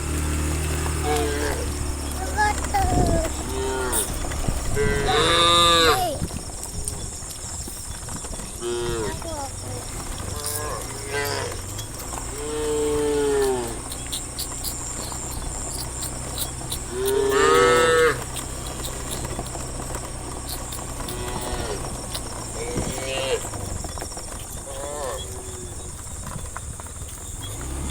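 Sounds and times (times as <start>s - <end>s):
cows mooing: 0.0s - 6.1s, 8.6s - 9.2s, 9.9s - 23.8s, 24.6s - 26.0s.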